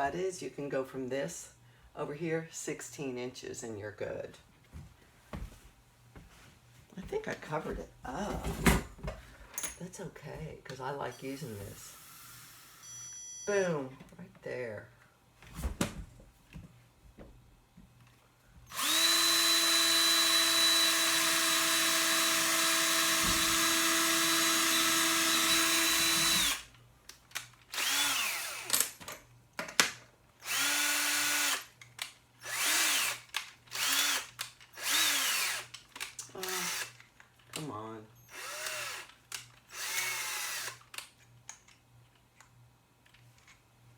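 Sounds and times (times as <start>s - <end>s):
power drill running: 11.9s - 12.8s, 18.7s - 26.7s, 27.7s - 28.8s, 30.4s - 31.7s, 32.4s - 35.7s, 36.4s - 37.0s, 38.3s - 39.1s, 39.7s - 40.9s.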